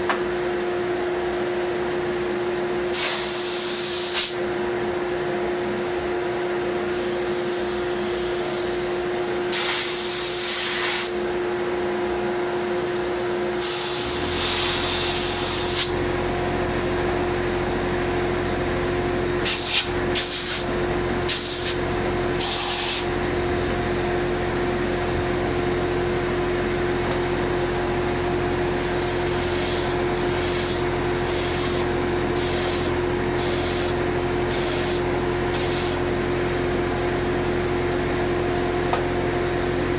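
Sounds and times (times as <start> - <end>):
electric sander humming: 13.9 - 16.9, 28.5 - 35.9
wood hissing against sandpaper: 28.9 - 35.0.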